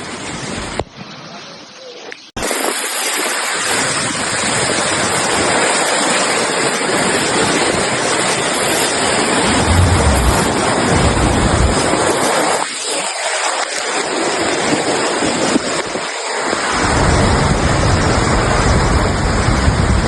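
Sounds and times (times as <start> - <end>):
water rushing: 8.0 - 14.5
low rumbles: 9.1 - 12.5.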